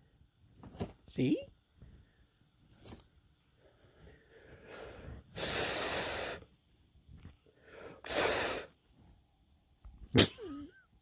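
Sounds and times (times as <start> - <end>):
soft breathy sounds: 3.4 - 9.2
forceful puff of breath: 4.6 - 6.4, 7.7 - 8.7.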